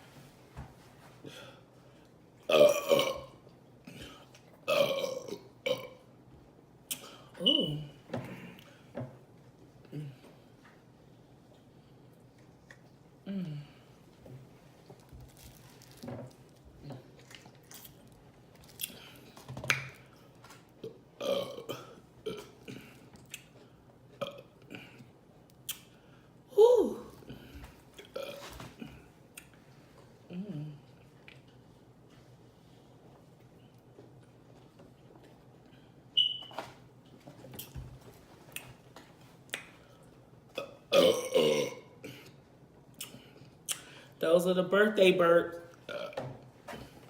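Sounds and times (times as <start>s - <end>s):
woman burping: 2.5s - 4.1s, 4.7s - 6.0s, 7.4s - 8.6s, 20.8s - 22.9s, 24.2s - 25.0s, 28.2s - 28.9s, 40.6s - 42.3s, 45.9s - 46.3s
mouth clicks and smacks: 6.9s - 7.2s, 25.5s - 25.9s, 39.5s - 39.8s, 42.9s - 43.9s.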